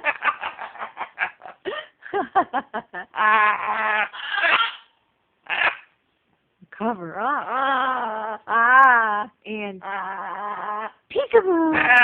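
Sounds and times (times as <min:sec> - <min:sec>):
parrot drawn-out pitched sound: 0:03.3 - 0:05.9.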